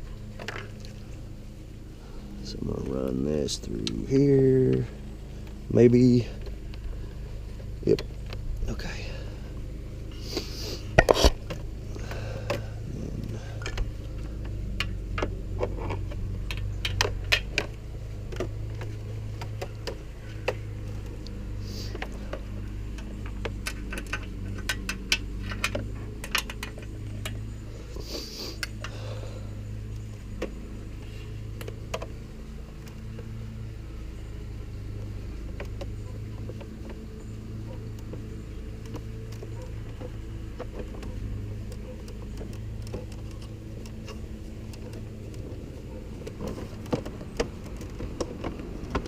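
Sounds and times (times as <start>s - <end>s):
steady low hum: 0.0s - 49.0s
small clicks and rattles of plastic: 11.0s - 27.6s, 29.8s - 49.0s.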